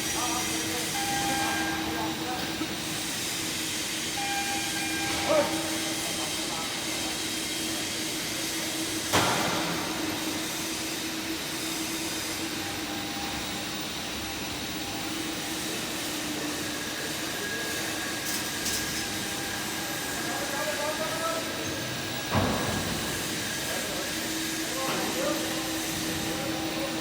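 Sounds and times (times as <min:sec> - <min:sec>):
machinery noise: 0:00.0 - 0:13.4, 0:14.4 - 0:27.0.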